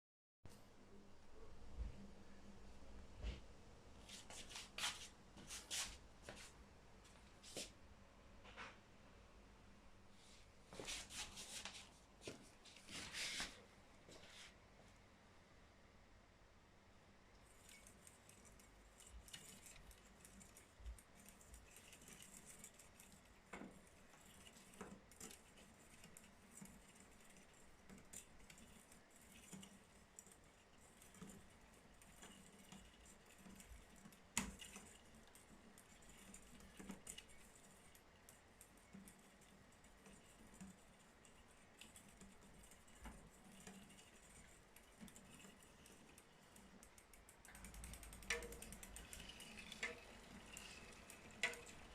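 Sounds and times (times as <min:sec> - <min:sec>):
bicycle knocking and clicking: 0:19.1 - 0:51.9.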